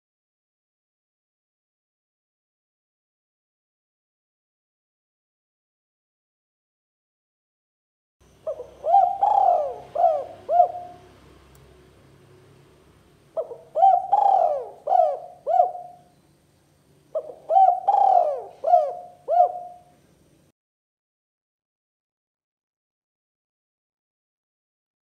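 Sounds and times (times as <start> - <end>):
dove cooing: 8.4 - 11.2, 13.4 - 16.1, 17.1 - 20.0.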